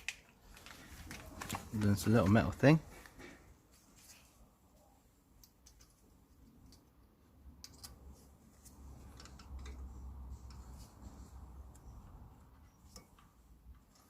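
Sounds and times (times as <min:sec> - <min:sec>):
metallic clicks of brake pads: 0:05.4 - 0:08.1, 0:08.7 - 0:10.7.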